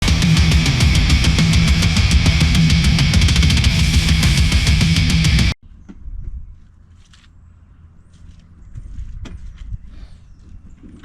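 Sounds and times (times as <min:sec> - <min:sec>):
heavy rock music: 0:00.0 - 0:05.6.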